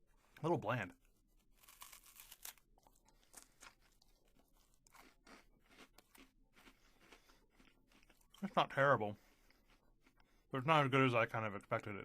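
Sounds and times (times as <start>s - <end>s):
person chewing wafer: 1.4s - 10.5s.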